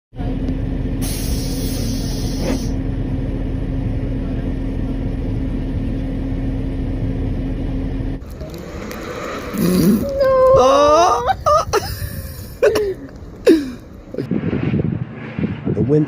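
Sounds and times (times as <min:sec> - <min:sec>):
vehicle engine rumble: 0:00.1 - 0:16.0
brief hiss: 0:01.0 - 0:02.8.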